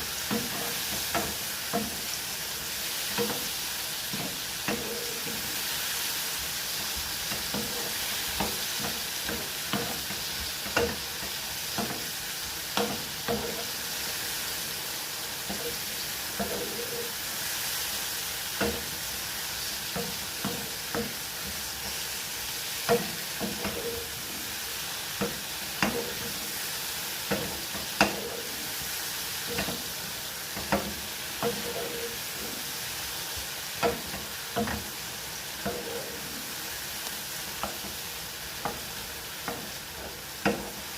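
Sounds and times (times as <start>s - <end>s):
food sizzling in frying pan: 0.0s - 40.9s
utensil scraping pan: 0.1s - 2.2s, 3.0s - 5.6s, 6.6s - 12.1s, 12.8s - 14.0s, 15.4s - 17.2s, 22.9s - 24.5s, 25.2s - 32.8s, 35.6s - 36.6s.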